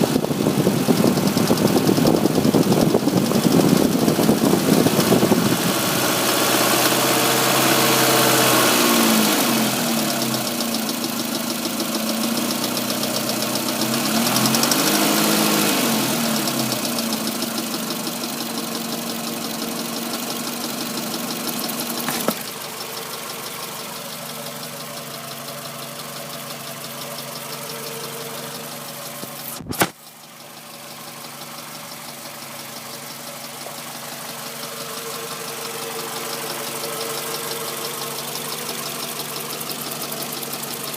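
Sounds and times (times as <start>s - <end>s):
engine revving and idling: 0.0s - 40.9s
rapid engine ticking: 0.0s - 40.9s
sharp knock: 29.6s - 30.0s.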